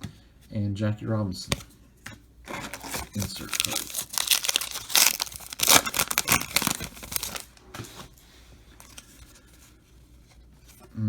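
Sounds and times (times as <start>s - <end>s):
faint handling sounds: 1.3s - 11.0s
wrapper tearing and crinkling: 2.5s - 7.6s.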